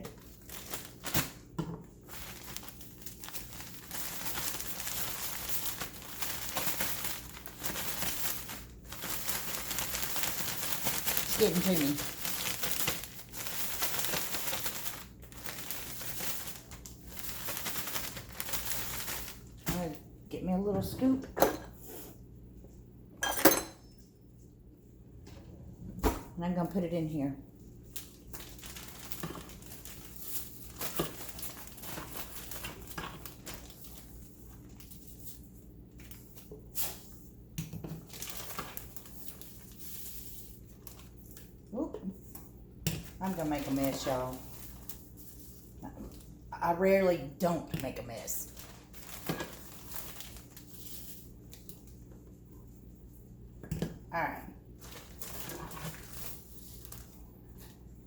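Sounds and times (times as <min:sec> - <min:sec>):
plastic bag crinkling: 0:00.0 - 0:20.0, 0:27.7 - 0:37.2, 0:38.0 - 0:42.3, 0:43.0 - 0:52.0, 0:54.7 - 0:57.8.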